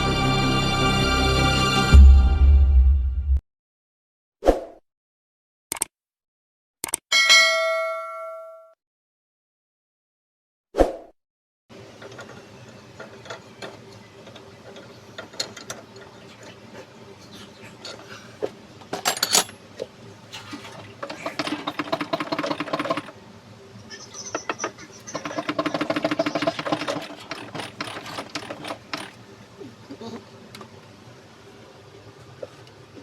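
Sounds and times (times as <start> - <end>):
tool clicks: 5.7 - 5.9, 6.8 - 7.0, 24.4 - 29.2
rapid mechanical rattling: 11.7 - 16.8, 20.3 - 23.4, 24.2 - 29.4.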